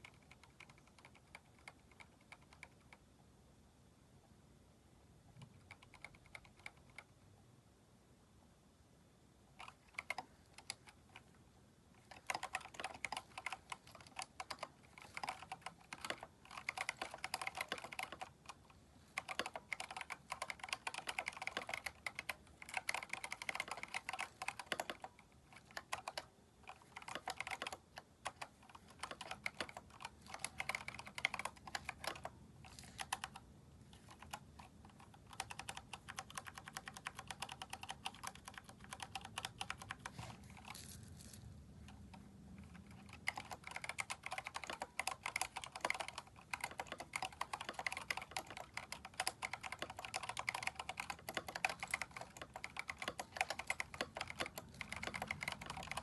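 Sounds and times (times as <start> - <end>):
mechanical keyboard key clicks: 12.1 - 18.3, 19.2 - 32.3, 34.0 - 40.7, 42.1 - 56.0.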